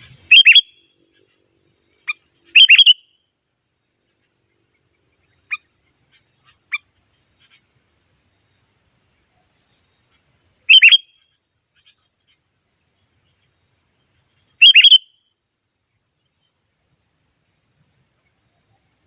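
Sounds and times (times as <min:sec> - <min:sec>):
bird calling bubbly notes: 0:00.3 - 0:00.7.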